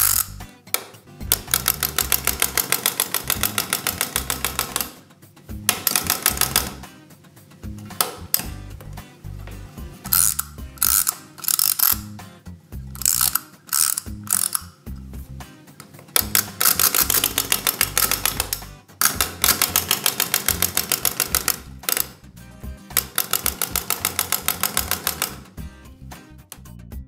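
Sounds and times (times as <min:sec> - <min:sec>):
clockwork motor ticking: 0:00.0 - 0:00.4, 0:10.1 - 0:12.0, 0:16.4 - 0:22.2, 0:23.0 - 0:25.4
wind-up key ratcheting: 0:00.0 - 0:00.5, 0:01.3 - 0:05.0, 0:05.7 - 0:06.8, 0:10.1 - 0:12.1, 0:13.0 - 0:14.8, 0:16.2 - 0:22.2, 0:23.0 - 0:25.4.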